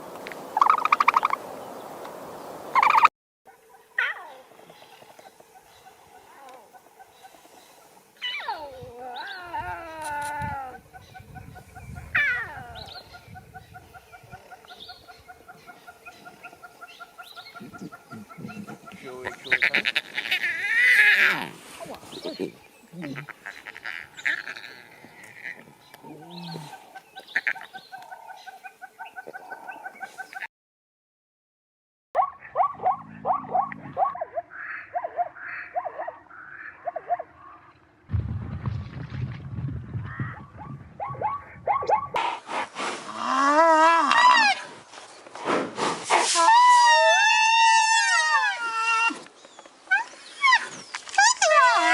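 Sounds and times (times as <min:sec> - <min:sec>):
animal chirping calls: 0:00.6 - 0:01.4
deeper sound: 0:38.1 - 0:42.1
animal call sliding down in pitch: 0:46.1 - 0:49.2.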